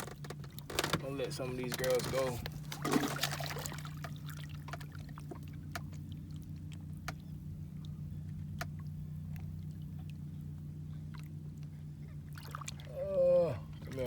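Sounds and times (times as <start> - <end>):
faint clicks and knocks: 0.0 - 2.9, 4.0 - 6.0, 7.0 - 7.3
small boat motor humming: 0.0 - 14.0.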